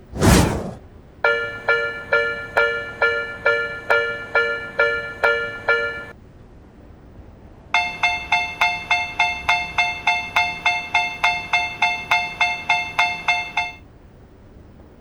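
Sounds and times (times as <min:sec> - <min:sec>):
crossing warning bell clanging: 0:01.2 - 0:06.2, 0:07.8 - 0:13.8
higher-pitched faster crossing bell: 0:01.3 - 0:06.1, 0:07.8 - 0:13.8.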